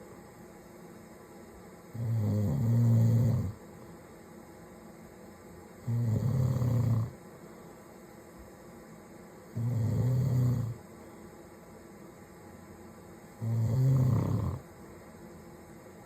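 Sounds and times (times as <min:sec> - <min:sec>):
man snoring: 0:02.0 - 0:03.6, 0:05.8 - 0:07.2, 0:09.6 - 0:10.8, 0:13.4 - 0:14.6.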